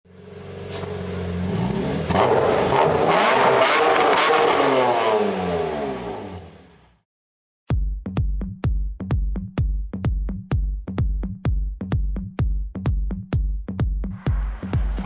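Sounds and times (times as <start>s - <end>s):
car engine revving on dyno: 0.7s - 6.8s.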